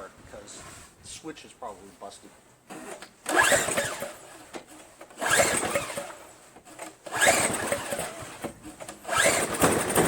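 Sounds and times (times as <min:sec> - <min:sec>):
engine cranking without starting: 0:02.7 - 0:10.0.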